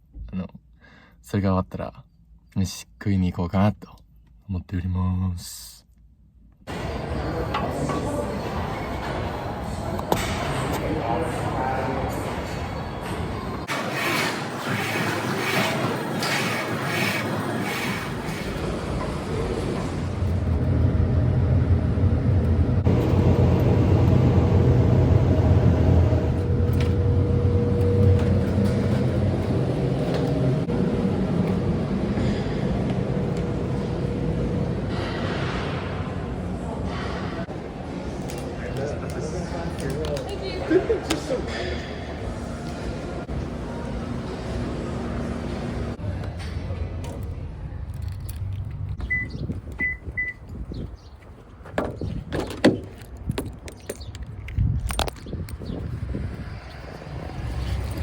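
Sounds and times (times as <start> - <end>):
road and engine rumble: 15.6 - 38.0, 41.4 - 58.0
short electronic beeps: 49.0 - 50.4
knocks and thumps: 51.7 - 54.0.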